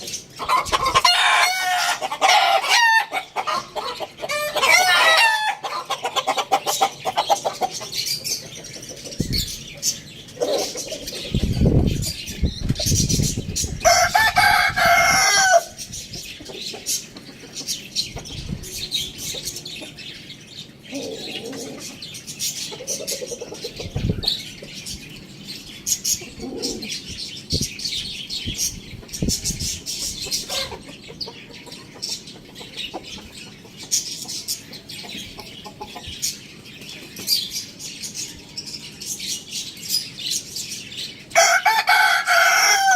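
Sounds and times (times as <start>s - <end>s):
chickens clucking: 0.0s - 42.9s
rooster crowing: 13.8s - 15.8s, 41.4s - 42.9s.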